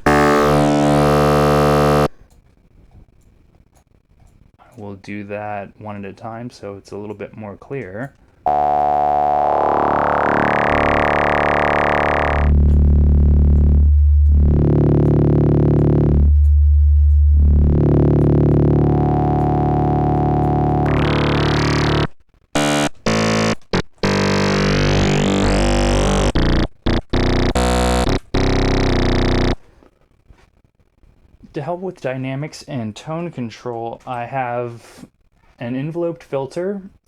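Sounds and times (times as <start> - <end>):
synthesizer short choppy notes: 0.0 - 2.1, 8.5 - 29.6
synthesizer low held notes: 0.0 - 2.2, 8.5 - 29.6.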